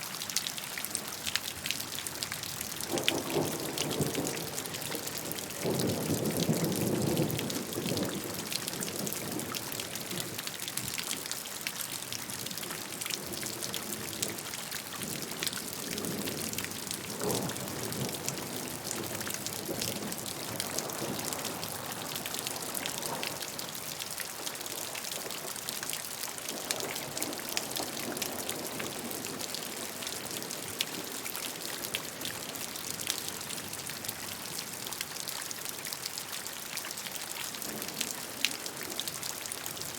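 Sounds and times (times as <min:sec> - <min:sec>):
steady rain falling: 0:00.0 - 0:39.9
raindrops tapping on a surface: 0:00.9 - 0:11.2.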